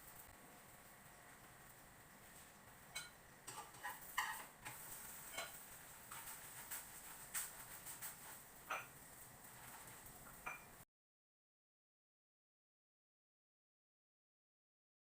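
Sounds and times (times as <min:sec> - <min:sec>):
utensils clinking against cookware: 0:02.9 - 0:09.0, 0:10.2 - 0:10.8.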